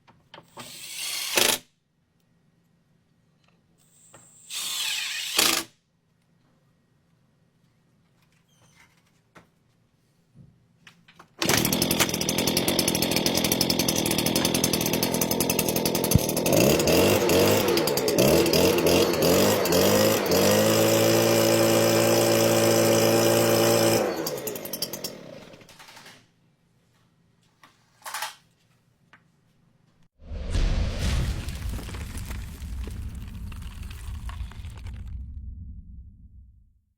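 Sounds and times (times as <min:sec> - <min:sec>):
small two-stroke engine revving: 0:11.4 - 0:25.6.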